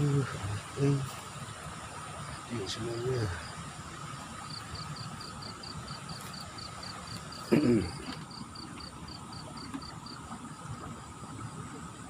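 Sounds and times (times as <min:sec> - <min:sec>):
insect chirping: 0:00.0 - 0:12.0
loud voiced grunt: 0:07.5 - 0:08.0.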